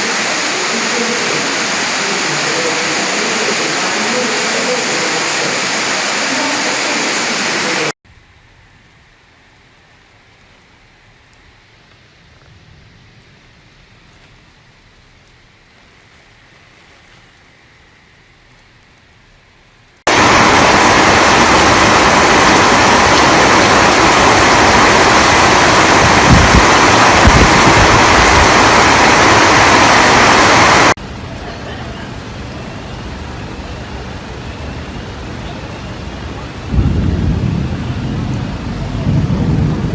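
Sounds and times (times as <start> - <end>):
rain hissing: 0.0 - 8.0, 8.8 - 31.0
heavy rain and wind: 0.0 - 39.9
low rumbles: 20.1 - 31.2, 36.6 - 39.9.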